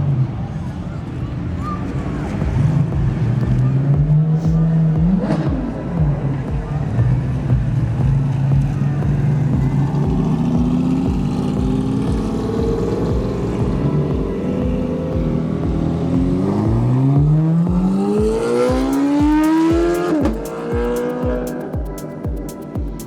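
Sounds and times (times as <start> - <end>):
sports car engine accelerating: 0.1 - 22.7.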